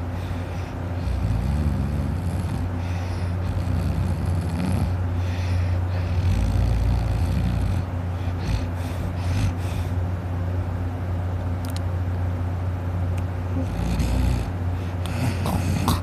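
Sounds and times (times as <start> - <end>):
man snoring heavily: 0.0 - 9.9, 13.6 - 16.0.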